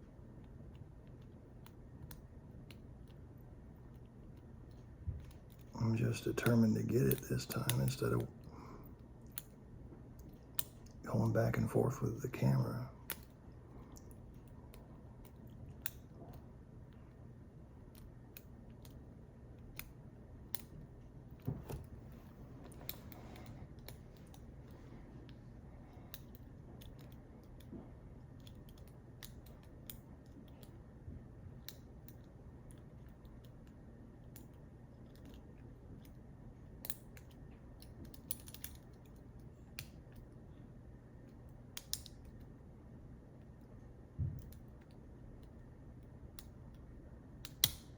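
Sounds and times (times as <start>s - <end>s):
lock pick metallic clicks: 47.4s - 47.9s.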